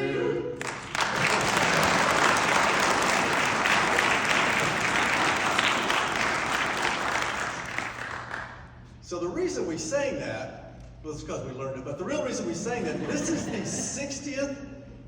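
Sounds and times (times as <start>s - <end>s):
audience applauding: 0.6s - 8.7s.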